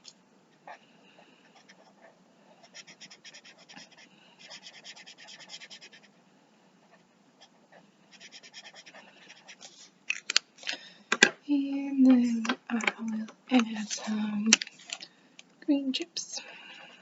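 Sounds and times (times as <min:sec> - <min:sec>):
marker scribbling on paper: 0:02.6 - 0:06.1, 0:08.1 - 0:09.8.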